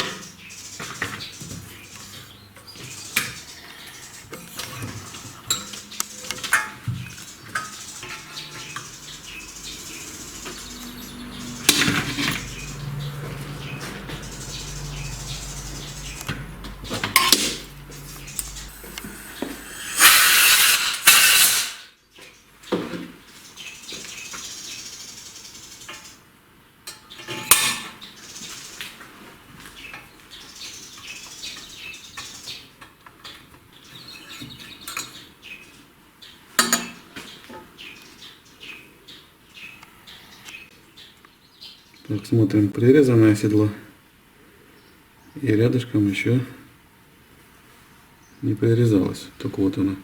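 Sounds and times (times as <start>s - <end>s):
steel tools clinking and scraping: 4.2s - 6.8s, 7.4s - 13.8s, 14.4s - 21.9s
low hum: 9.0s - 21.0s
metal clanks: 15.8s - 21.9s.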